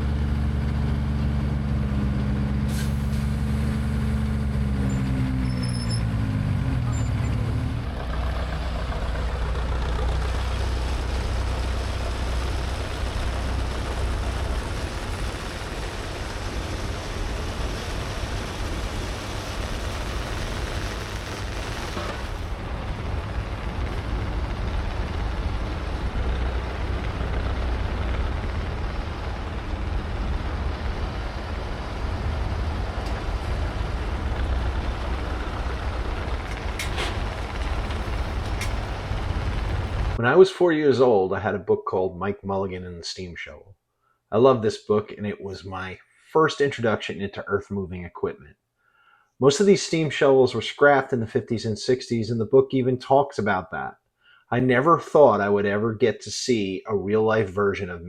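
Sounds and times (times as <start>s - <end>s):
large machine rumbling: 0.0s - 40.2s.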